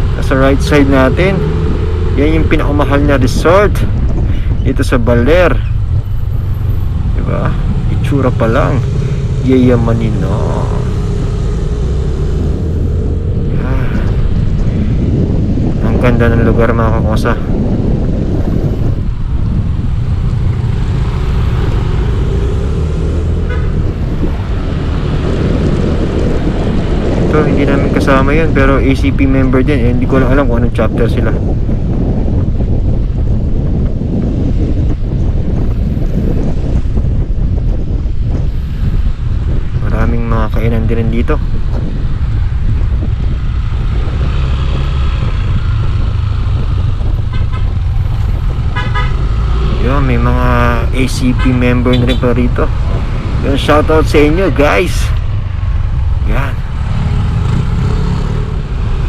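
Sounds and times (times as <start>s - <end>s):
wind on microphone: 0.0s - 59.0s
scooter horn toot: 48.8s - 49.2s, 51.9s - 52.2s
horn beeps: 51.9s - 52.3s.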